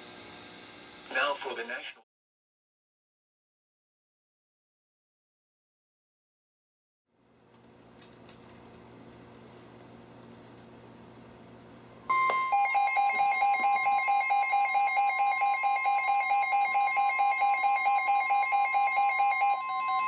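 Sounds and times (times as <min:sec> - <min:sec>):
faint radio hiss: 0:01.0 - 0:02.0
steady alarm tone: 0:12.1 - 0:20.0.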